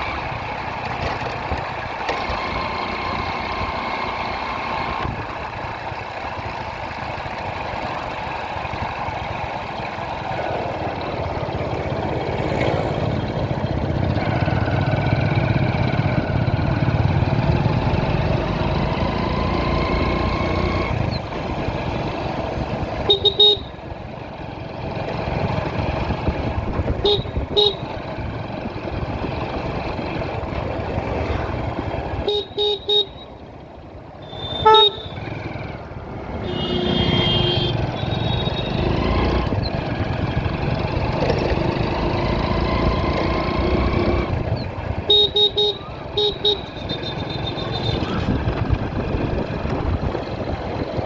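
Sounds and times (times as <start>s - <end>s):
motorcycle engine and road noise: 0.0s - 51.0s
other vehicles in traffic: 0.0s - 51.0s
short horn honks: 34.3s - 35.3s, 36.4s - 38.7s.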